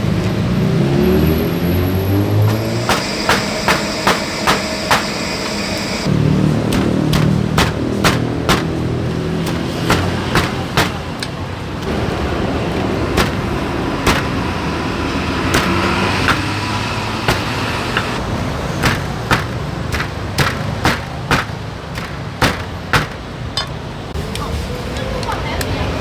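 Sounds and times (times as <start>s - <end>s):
road traffic rumble: 0.0s - 26.0s
sharp clacks or knocks: 6.7s - 11.4s, 13.2s - 14.5s, 15.5s - 18.2s, 18.8s - 23.8s.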